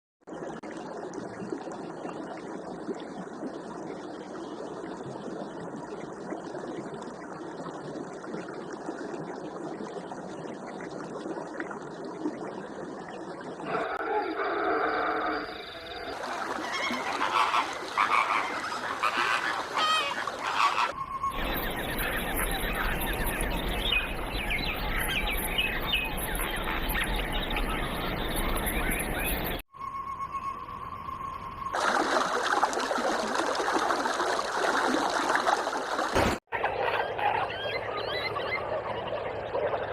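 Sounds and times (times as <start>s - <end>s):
chorus of animal calls: 13.7s - 29.6s, 36.5s - 39.9s.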